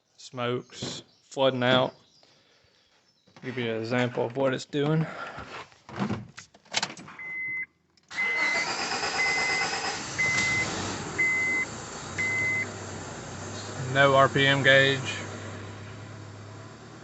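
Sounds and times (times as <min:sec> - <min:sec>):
warning chime beeping: 0:08.2 - 0:12.7
car engine cranking and running rough: 0:08.2 - 0:17.0.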